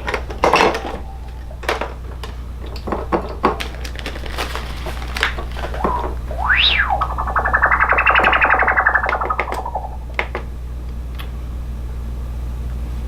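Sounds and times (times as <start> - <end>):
steady low hum: 0.0 - 3.3, 4.7 - 11.0
electronic tone sweeping: 0.5 - 1.8, 5.7 - 10.3.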